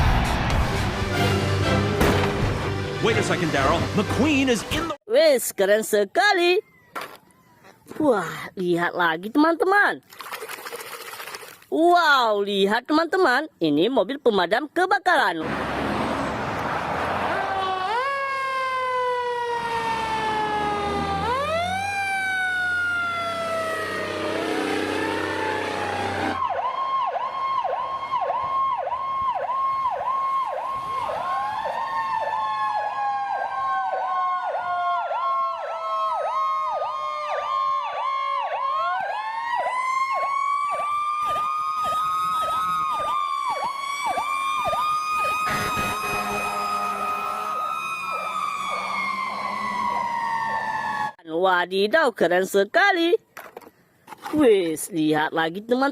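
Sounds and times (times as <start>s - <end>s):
fire engine siren wailing and yelping: 15.8s - 51.2s
slower wailing siren tone: 17.3s - 51.2s.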